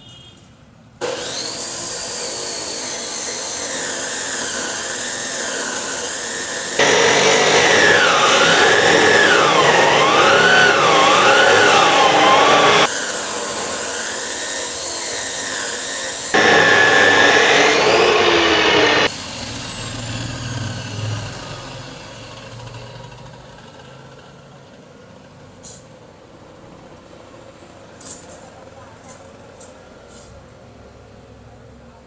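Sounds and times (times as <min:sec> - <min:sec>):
cutting machine running: 0:01.0 - 0:21.0
screeching metal cutting: 0:01.0 - 0:21.3
machine winding down whine: 0:06.8 - 0:12.9, 0:16.4 - 0:20.5.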